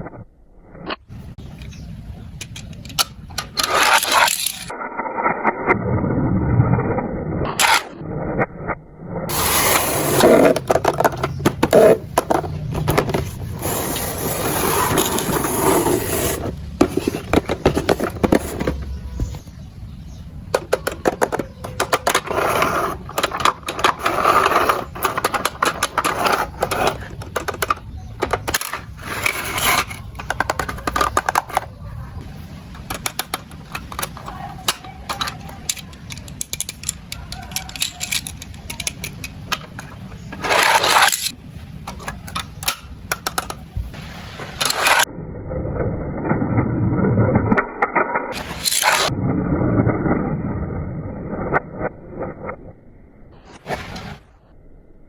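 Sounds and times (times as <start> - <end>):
plastic toys clicking and scraping: 0.9 - 5.3, 7.6 - 8.0, 9.3 - 43.8, 44.5 - 45.1, 47.3 - 49.1.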